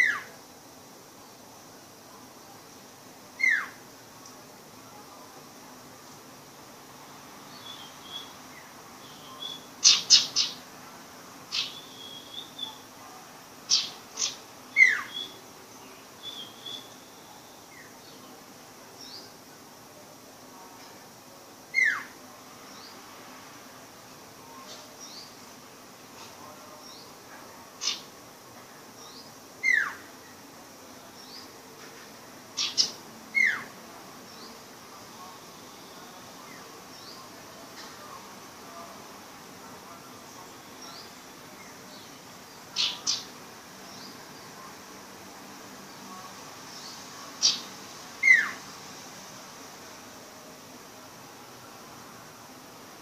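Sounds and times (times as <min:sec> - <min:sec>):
bird chirping: 0:07.5 - 0:10.6, 0:11.5 - 0:12.9, 0:13.7 - 0:18.3, 0:27.8 - 0:28.1, 0:32.6 - 0:33.7, 0:40.4 - 0:43.3, 0:46.7 - 0:48.6
soft whistled bird notes: 0:11.5 - 0:12.9, 0:13.7 - 0:15.4, 0:16.2 - 0:17.9.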